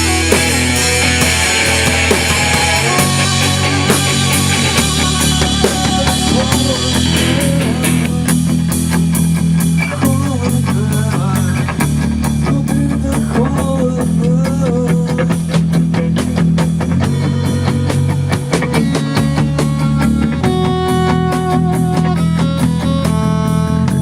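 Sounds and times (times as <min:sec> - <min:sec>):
wavering lead melody: 0:00.0 - 0:09.8, 0:17.0 - 0:23.7
drum kit beat: 0:00.0 - 0:24.0
rock band playing: 0:00.0 - 0:24.0
thick bass line: 0:00.0 - 0:24.0.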